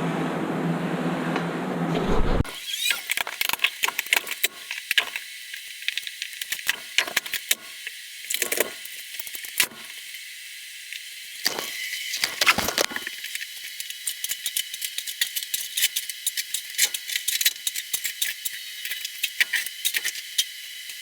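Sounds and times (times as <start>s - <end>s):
small hard objects clicking: 11.4s - 21.0s.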